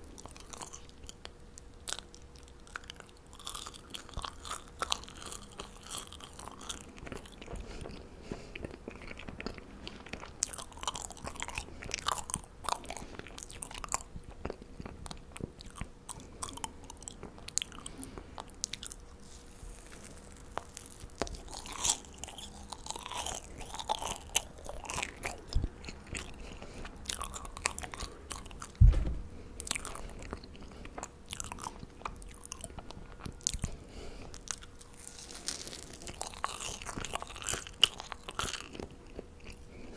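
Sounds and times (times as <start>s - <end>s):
person chewing marshmallows: 0.0s - 39.9s
dull thump: 28.8s - 29.4s.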